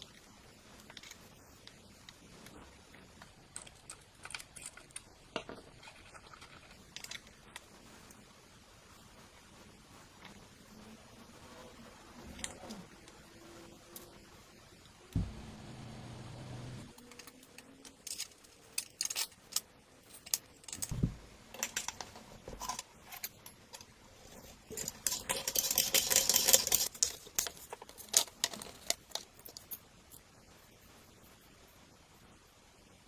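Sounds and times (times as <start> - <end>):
low hum: 15.0 - 17.0
metal parts clicking and jangling: 17.0 - 23.9, 24.7 - 29.8.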